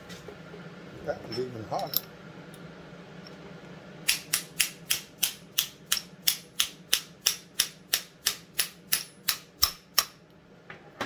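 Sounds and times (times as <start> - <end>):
small hammer tapping steel tube: 4.1 - 10.2.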